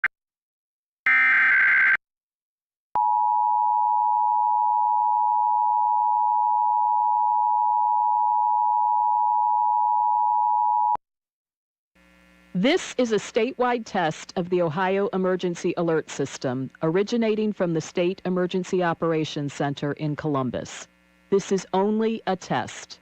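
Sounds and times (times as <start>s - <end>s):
harsh data screech: 1.1s - 2.0s.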